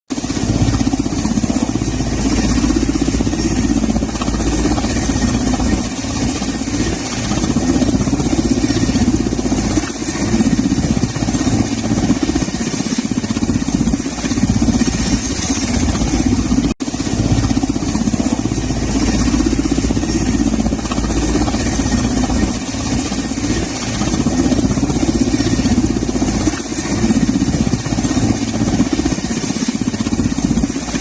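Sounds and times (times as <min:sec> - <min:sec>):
engine running with fast pulsing: 0:00.1 - 0:31.0.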